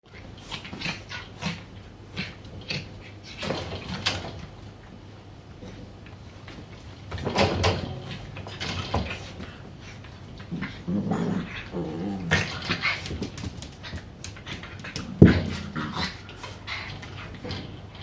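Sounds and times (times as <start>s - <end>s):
puppies scuffling on floor: 12.4s - 18.0s.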